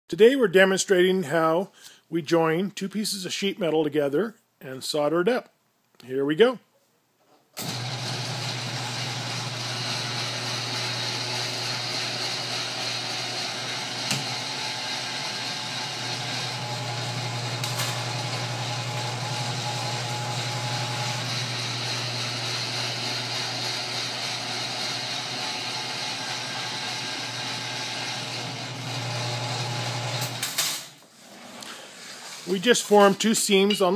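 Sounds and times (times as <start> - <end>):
electric motor humming: 7.7 - 30.4.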